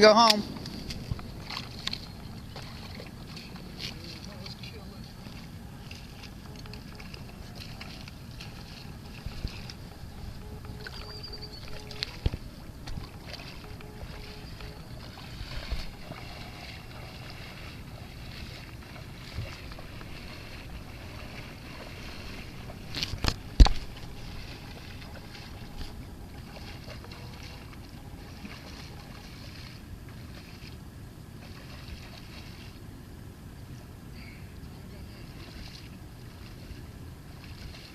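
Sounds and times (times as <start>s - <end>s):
steady low rumble: 0.0s - 37.9s.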